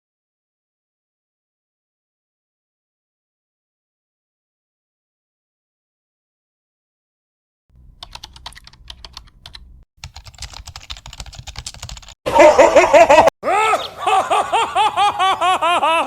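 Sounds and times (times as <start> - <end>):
faint rapid clicking: 7.8 - 12.2
person laughing loudly: 12.2 - 16.0.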